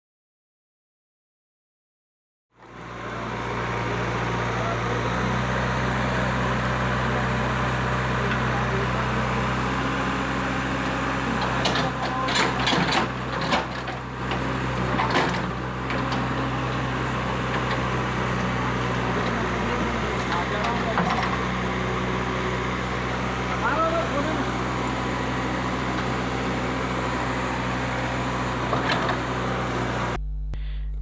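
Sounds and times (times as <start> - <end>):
excavator diesel engine: 2.6 - 30.4
sharp knocks and scraping clatter: 10.8 - 21.7, 28.5 - 30.0.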